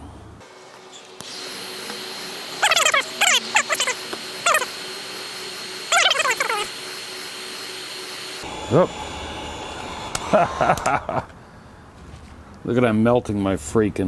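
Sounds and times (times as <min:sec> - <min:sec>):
high sweeping chirps: 0:00.4 - 0:08.4
heat gun blowing with whine: 0:00.4 - 0:08.6.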